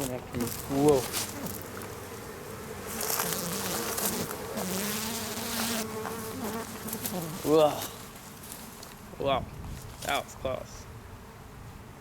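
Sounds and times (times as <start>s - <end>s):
honeybees buzzing: 0.0s - 9.2s.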